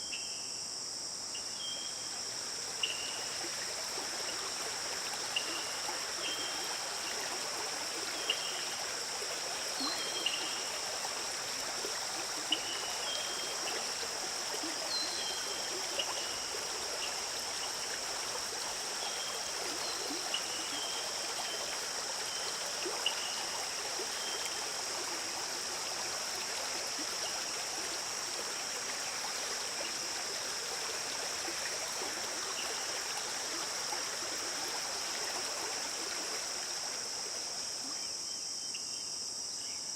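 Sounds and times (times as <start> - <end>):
stream flowing over stones: 1.9 - 38.0.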